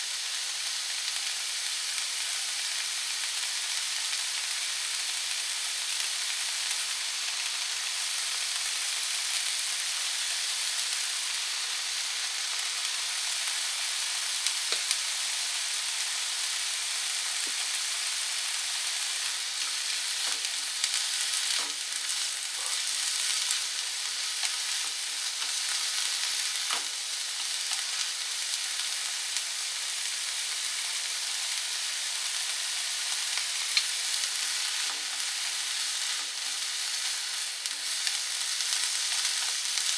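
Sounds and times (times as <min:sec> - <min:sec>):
peppers sizzling in a frying pan: 0:00.0 - 0:39.9
utensil clicking against pan: 0:33.8 - 0:34.0.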